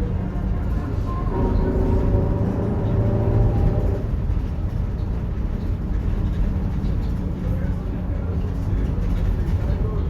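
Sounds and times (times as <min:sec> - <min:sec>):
bus differential whining: 0:00.0 - 0:05.4
engine and road rumble: 0:00.0 - 0:10.0.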